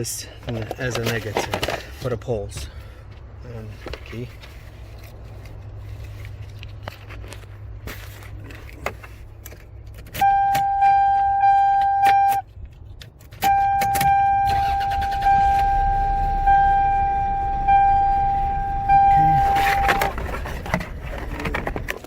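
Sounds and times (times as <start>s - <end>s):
car warning chime: 10.2s - 12.4s, 13.4s - 20.0s.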